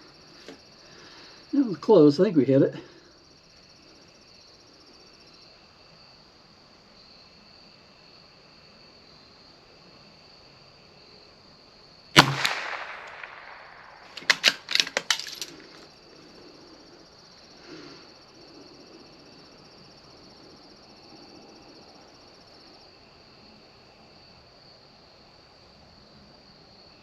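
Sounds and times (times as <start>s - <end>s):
crickets chirping: 0.0s - 27.0s
rifle shot: 12.2s - 15.7s
rifle bolt metallic clicks: 12.2s - 15.8s.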